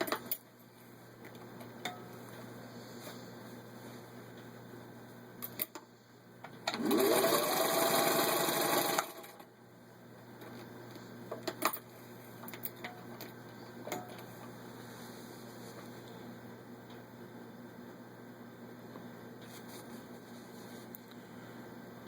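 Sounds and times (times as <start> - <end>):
sewing machine stitching: 6.7 - 9.4.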